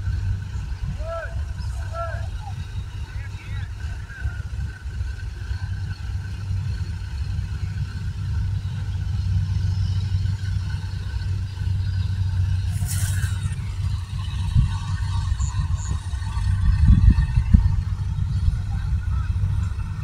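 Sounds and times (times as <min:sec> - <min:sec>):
combine harvester engine drone: 0:00.0 - 0:20.0
mechanical whine: 0:00.0 - 0:20.0
brief hiss: 0:12.7 - 0:13.6.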